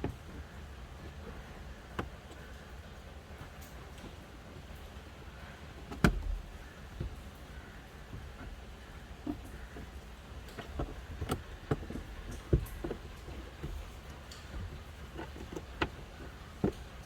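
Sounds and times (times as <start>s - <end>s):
plastic trim panel clicking loose: 5.9s - 7.2s.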